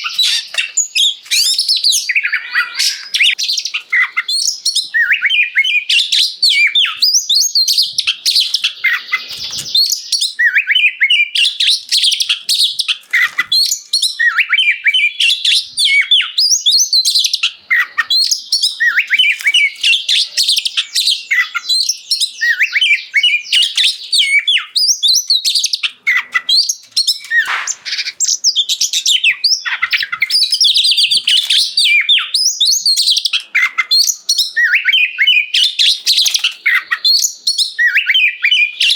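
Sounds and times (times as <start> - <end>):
songbird singing loudly: 0.0 - 38.9.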